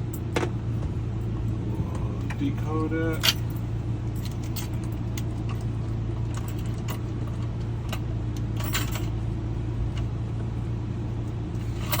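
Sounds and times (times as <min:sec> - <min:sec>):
low hum: 0:00.0 - 0:12.0
car keys clicking and jingling: 0:02.4 - 0:05.7.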